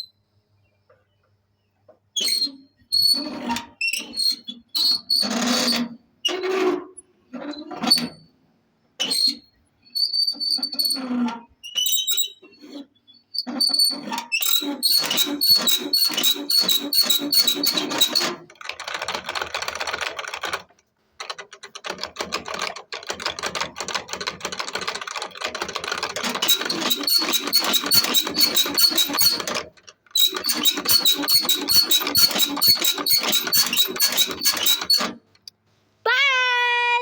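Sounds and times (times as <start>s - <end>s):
fast mechanical clicking: 14.5s - 35.5s.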